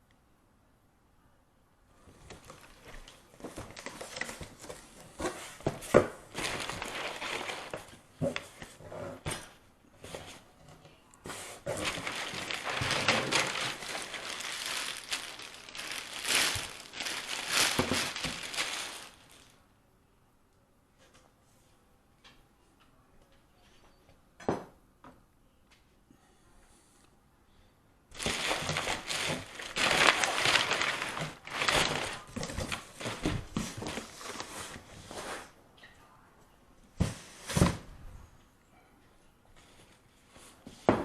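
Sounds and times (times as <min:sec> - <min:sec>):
crinkling and rustling: 0:01.9 - 0:19.6, 0:28.1 - 0:35.9.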